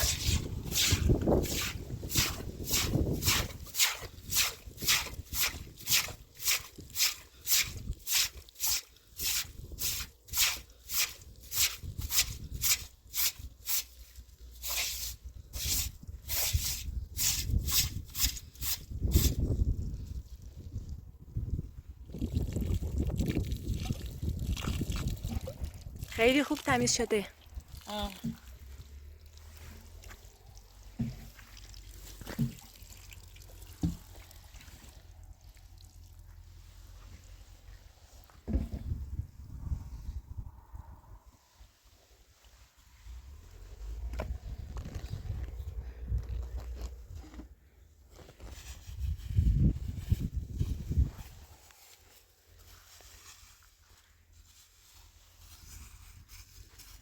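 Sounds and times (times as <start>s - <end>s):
water splashing and dripping: 22.1s - 36.2s.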